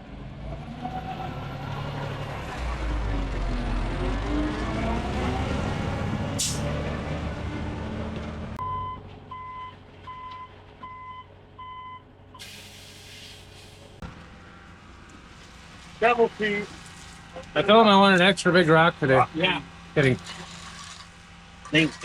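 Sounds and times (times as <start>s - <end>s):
truck engine running: 1.2s - 22.0s
reversing alarm beeping: 8.6s - 12.0s
air hiss: 12.4s - 14.0s.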